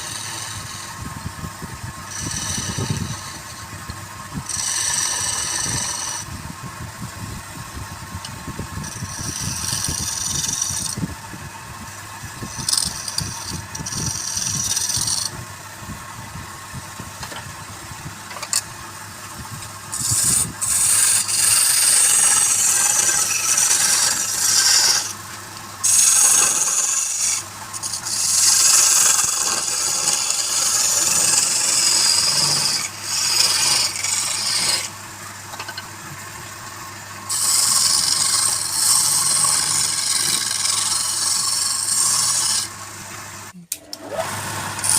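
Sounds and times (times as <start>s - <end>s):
turning tool scraping wood: 0.0s - 6.4s, 8.1s - 11.5s, 12.2s - 15.4s, 19.5s - 36.2s, 37.3s - 43.4s, 44.0s - 44.9s
wood lathe motor hum: 0.0s - 15.6s, 19.5s - 44.9s.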